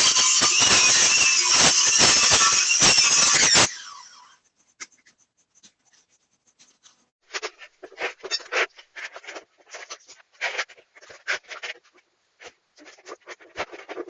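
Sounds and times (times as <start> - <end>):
power tool winding down: 0.0 - 4.4
scraping strokes: 4.2 - 14.0.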